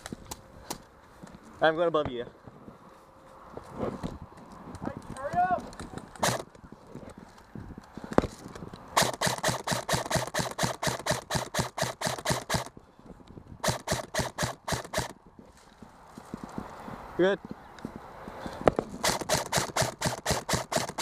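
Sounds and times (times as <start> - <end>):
airsoft gun rapid shots: 6.2 - 6.4, 9.0 - 12.7, 13.6 - 15.2, 19.0 - 21.0.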